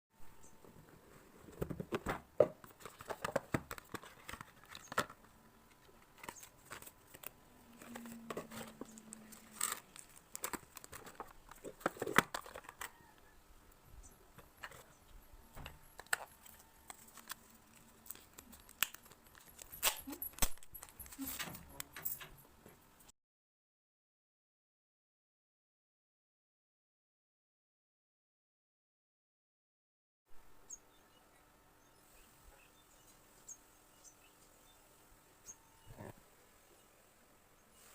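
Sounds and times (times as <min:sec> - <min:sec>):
packaging rustling and tearing: 0:01.4 - 0:13.0, 0:15.6 - 0:21.5.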